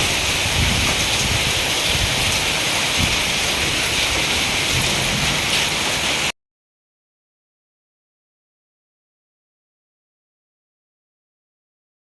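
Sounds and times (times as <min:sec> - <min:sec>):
heavy rain and hail: 0:00.0 - 0:06.3.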